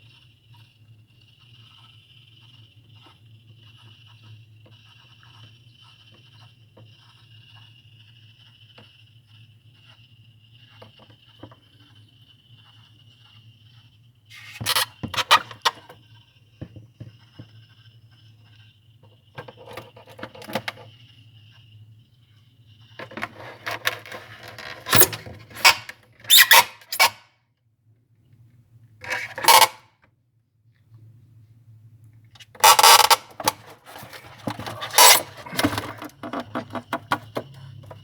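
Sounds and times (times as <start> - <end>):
refrigerator humming with high whine: 0.0 - 38.0
clattering and scraping: 14.3 - 15.9, 29.0 - 29.8, 32.5 - 38.0.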